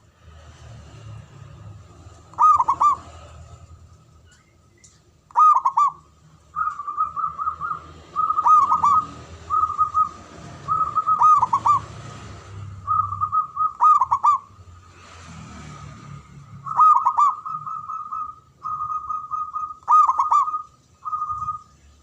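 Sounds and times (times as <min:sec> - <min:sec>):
dove cooing: 0:02.2 - 0:03.8, 0:05.3 - 0:14.6, 0:16.6 - 0:21.8.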